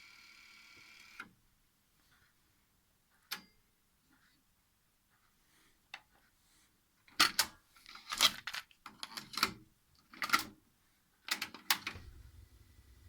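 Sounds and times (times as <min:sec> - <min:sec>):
low steady hum: 0:11.9 - 0:13.0.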